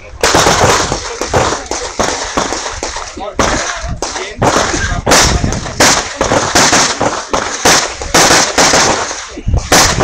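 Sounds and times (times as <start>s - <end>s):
rapid pistol shots: 0.2s - 10.0s.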